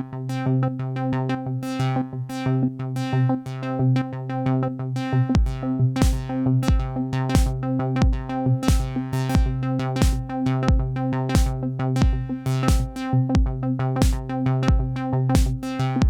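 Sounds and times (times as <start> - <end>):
drum machine kick drum: 5.4 - 15.7.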